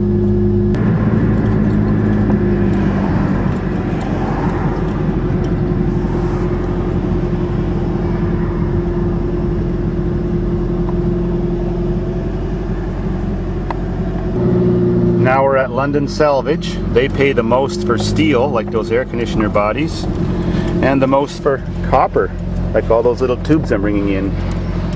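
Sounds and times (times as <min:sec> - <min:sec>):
car engine and road noise: 0:00.0 - 0:24.9.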